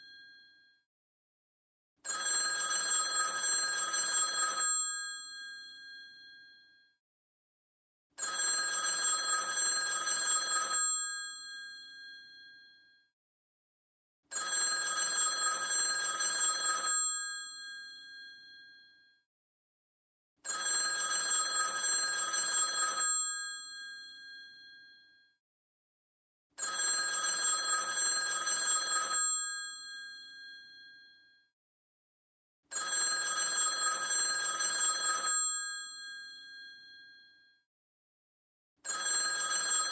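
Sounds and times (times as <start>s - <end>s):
telephone bell ringing: 0.0s - 0.6s, 2.0s - 6.8s, 8.2s - 12.9s, 14.3s - 19.0s, 20.4s - 25.2s, 26.6s - 31.3s, 32.7s - 37.4s, 38.8s - 39.9s.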